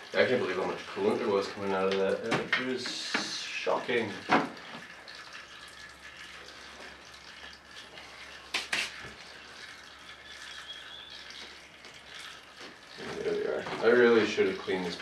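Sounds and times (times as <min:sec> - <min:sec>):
fluid trickling into pan: 0:00.0 - 0:15.0.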